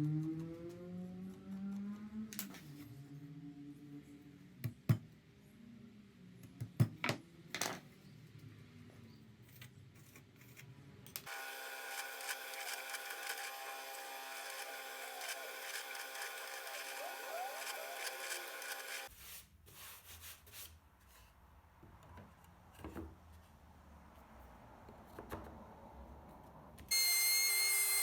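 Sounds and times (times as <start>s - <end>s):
machine with held tones: 11.3s - 19.1s, 26.9s - 28.0s.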